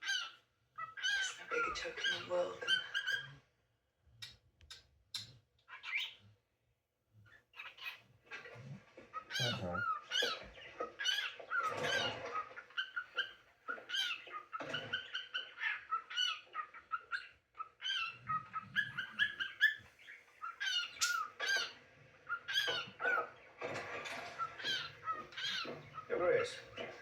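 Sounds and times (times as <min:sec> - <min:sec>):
cockatiel chirping: 0:05.1 - 0:06.2, 0:07.6 - 0:08.0, 0:09.1 - 0:23.3, 0:24.4 - 0:26.9.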